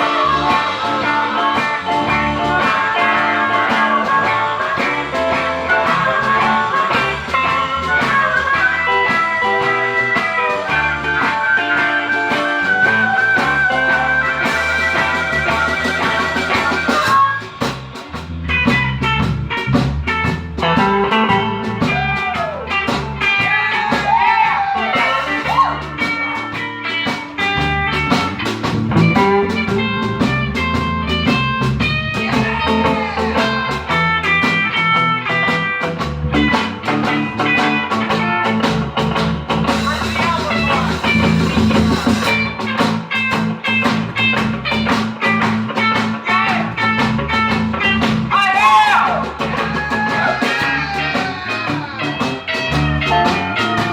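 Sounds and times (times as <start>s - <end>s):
bending guitar notes: 0.0s - 53.9s
blues band playing: 0.0s - 53.9s.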